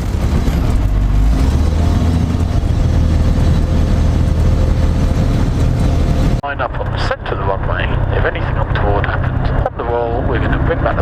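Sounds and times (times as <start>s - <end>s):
light aircraft engine idling: 2.3s - 11.0s.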